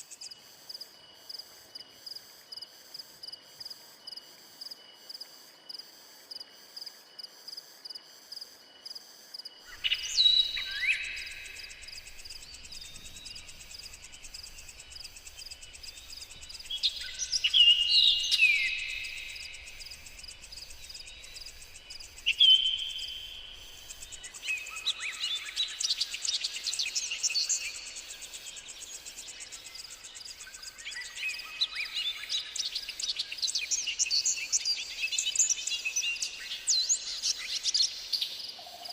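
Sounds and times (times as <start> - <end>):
cricket-like chirp: 0.0 - 38.9
birds calling and singing: 9.7 - 38.9
high insect buzz: 9.8 - 24.4.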